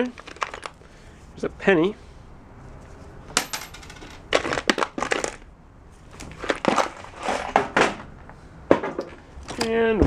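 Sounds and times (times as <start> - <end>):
objects rummaged in a box: 0.0 - 0.8, 4.3 - 5.4, 6.1 - 7.8.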